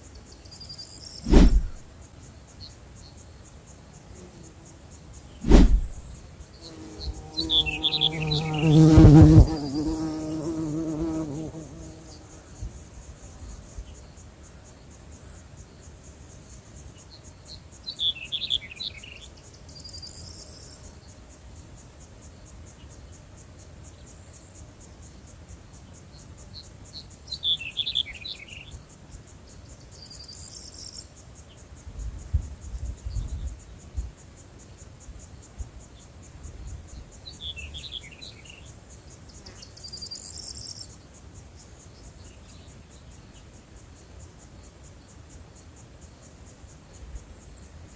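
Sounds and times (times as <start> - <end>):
insect chirring: 4.0 - 13.3.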